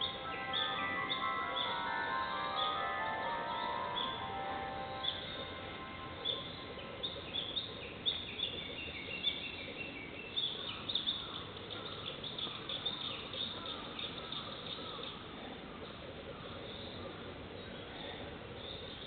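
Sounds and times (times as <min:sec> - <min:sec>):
bush warbler singing: 0:00.0 - 0:15.1
birds chirping and trilling: 0:00.0 - 0:18.0.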